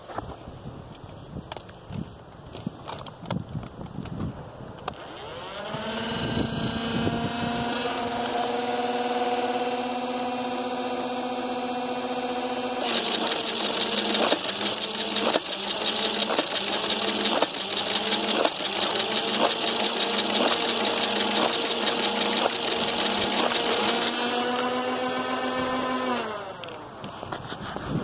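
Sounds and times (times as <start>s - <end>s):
toy gun motor whirring: 4.9s - 27.4s
sharp clicks of projectiles firing: 12.8s - 27.2s.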